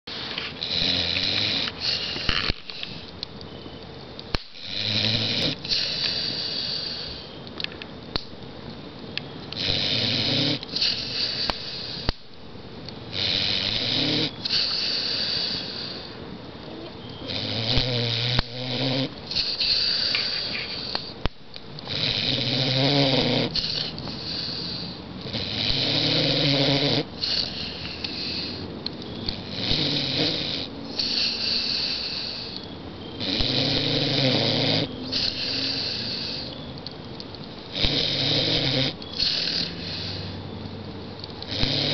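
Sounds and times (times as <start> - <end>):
dog snoring: 0.6 - 3.0, 4.5 - 7.2, 9.6 - 12.1, 13.1 - 16.1, 17.2 - 21.2, 21.8 - 28.6, 29.3 - 32.6, 33.2 - 36.5, 37.7 - 40.3, 41.5 - 41.9.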